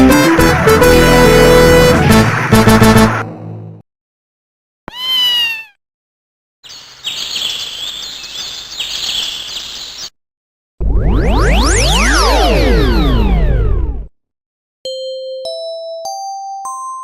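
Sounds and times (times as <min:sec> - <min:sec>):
loud sweeping electronic tone: 0:00.8 - 0:03.8, 0:10.8 - 0:14.1
recorded cat meow: 0:04.9 - 0:05.8
hiss with high chirps: 0:06.7 - 0:10.1.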